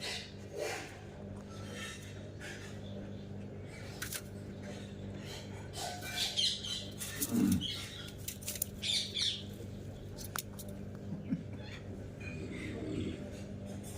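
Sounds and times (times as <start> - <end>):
parrot chirping and squawking: 0.0 - 0.7, 5.1 - 8.2, 8.8 - 9.5
steady low hum: 0.0 - 13.9.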